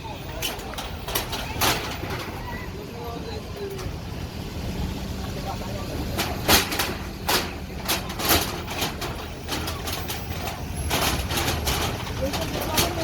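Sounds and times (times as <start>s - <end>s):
heavy engine running: 0.0s - 13.0s
demolition bangs and clatters: 0.4s - 2.6s, 6.0s - 13.0s.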